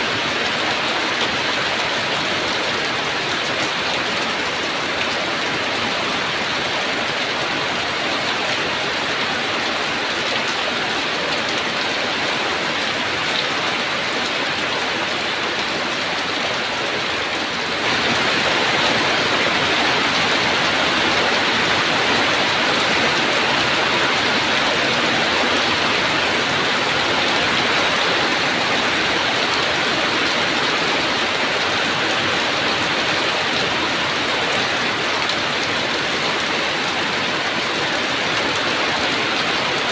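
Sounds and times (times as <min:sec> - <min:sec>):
heavy rain hissing: 0:13.4 - 0:39.9.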